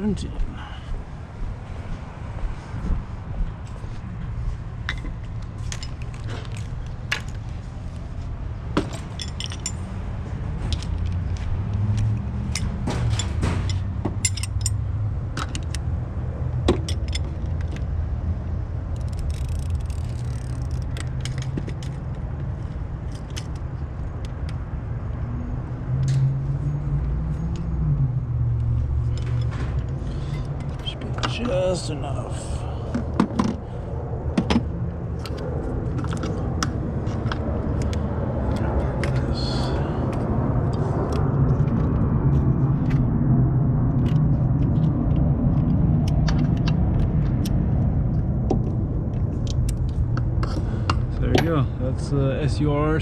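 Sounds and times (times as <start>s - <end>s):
steady low hum: 0.0s - 53.0s
metal hand tools clinking: 12.6s - 14.8s.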